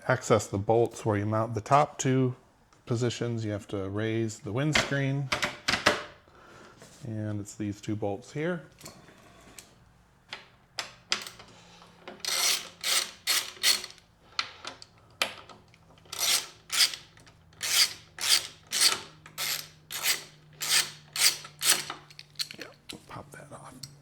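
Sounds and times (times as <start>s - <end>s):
ratchet wrench clicking: 12.2s - 14.1s, 16.1s - 22.9s.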